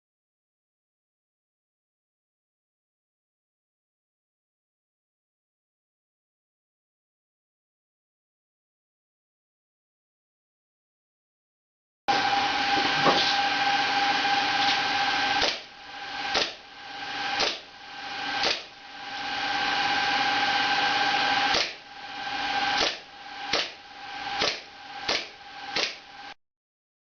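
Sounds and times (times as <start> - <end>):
high-pitched hum: 12.1 - 26.4
airsoft pistol shots: 16.3 - 16.6, 17.4 - 17.7, 18.4 - 18.7, 22.8 - 23.8, 24.4 - 26.0.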